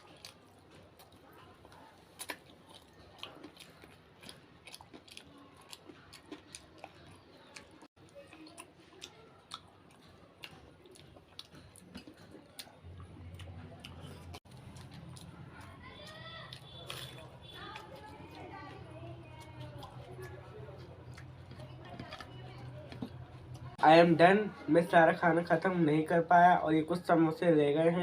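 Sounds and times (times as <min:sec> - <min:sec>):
person chewing food: 0:00.0 - 0:23.8
small crunches: 0:14.0 - 0:23.8.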